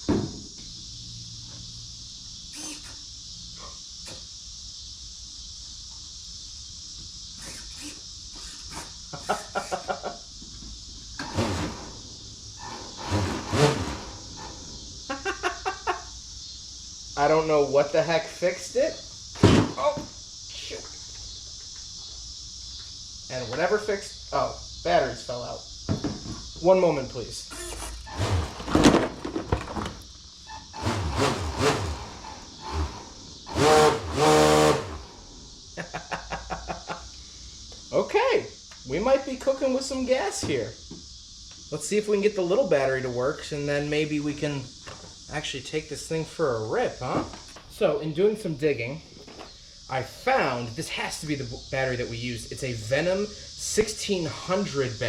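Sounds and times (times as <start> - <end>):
steady hiss: 0.0 - 28.4, 31.9 - 55.0
man laughing: 9.2 - 10.2, 15.1 - 16.2, 35.8 - 37.2.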